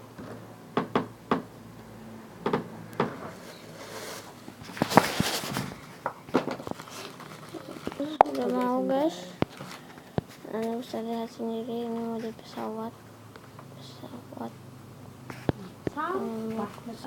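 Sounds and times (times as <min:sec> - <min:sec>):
short rustle: 0:03.3 - 0:05.9.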